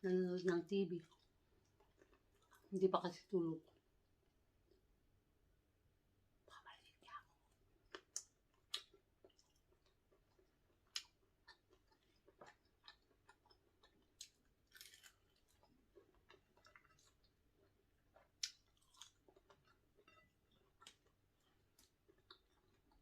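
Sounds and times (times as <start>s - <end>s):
person chewing food: 1.0s - 2.7s, 7.0s - 23.0s.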